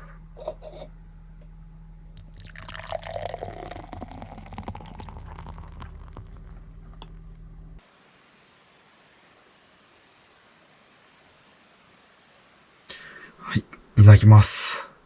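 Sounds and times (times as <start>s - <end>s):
beer pouring into glass: 2.2s - 7.3s
fizzing bubbles: 2.2s - 7.3s.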